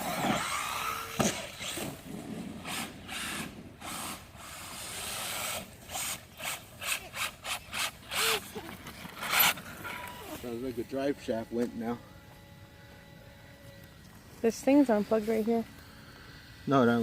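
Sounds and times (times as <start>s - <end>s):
rc truck motor driving: 0.0s - 17.0s
drivetrain scraping and rasping: 6.4s - 10.5s.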